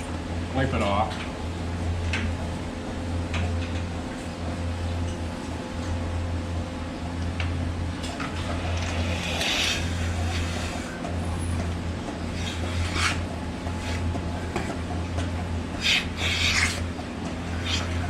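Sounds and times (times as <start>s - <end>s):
vacuum pump humming: 0.0s - 18.0s.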